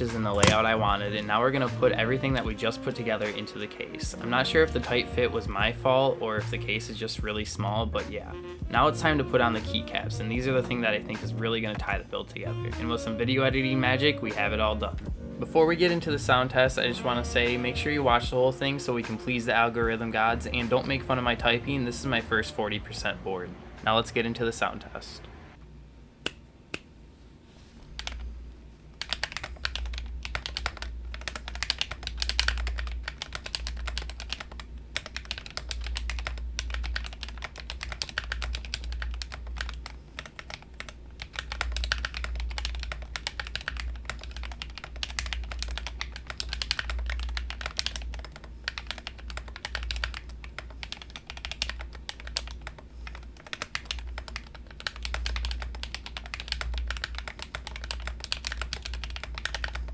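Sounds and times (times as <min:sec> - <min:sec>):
mechanical keyboard typing: 0:00.2 - 0:00.8, 0:28.0 - 0:28.2, 0:29.0 - 0:59.9.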